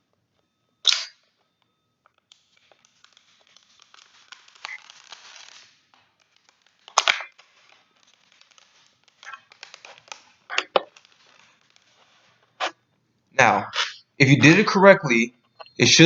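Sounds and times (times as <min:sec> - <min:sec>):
loud sharp crack: 0:00.8 - 0:01.2, 0:06.9 - 0:07.4
plastic bottle crinkling: 0:02.2 - 0:12.8.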